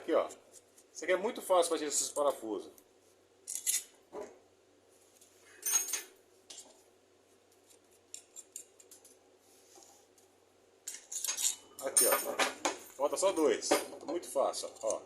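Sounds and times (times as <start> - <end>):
pliers and screws clinking on metal: 3.5 - 4.0, 10.9 - 13.0, 13.7 - 15.0.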